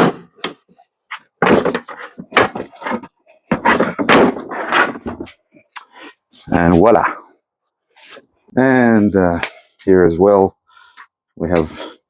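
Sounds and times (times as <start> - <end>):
plastic fender knocks and thumps: 1.4 - 5.3.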